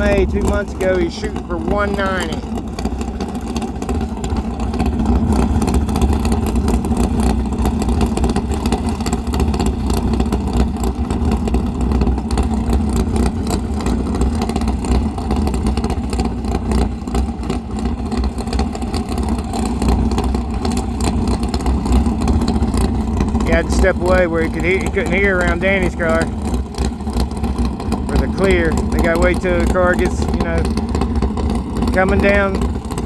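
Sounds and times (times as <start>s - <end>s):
race car engine running: 0.0s - 33.0s.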